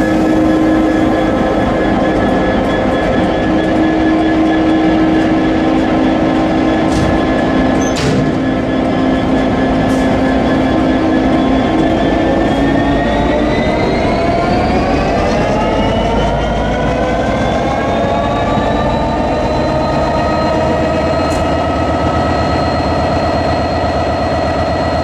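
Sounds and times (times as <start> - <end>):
locomotive diesel engine droning: 0.0 - 25.0.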